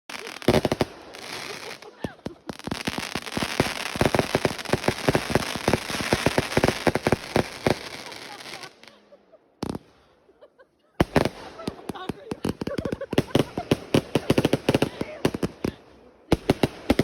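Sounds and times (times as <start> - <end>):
fireworks bangs: 0.1 - 8.9, 9.6 - 10.1, 11.0 - 17.0
fireworks crackling hiss: 0.1 - 9.0.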